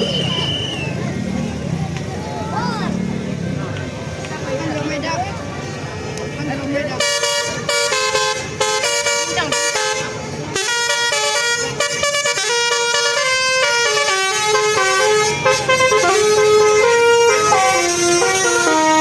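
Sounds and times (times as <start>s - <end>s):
multi-tone bus horn melody: 6.8s - 19.0s.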